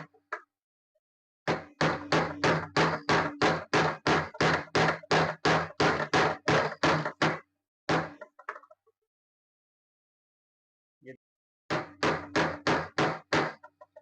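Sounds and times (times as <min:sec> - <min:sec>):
hammer tapping metal: 0:01.5 - 0:08.3.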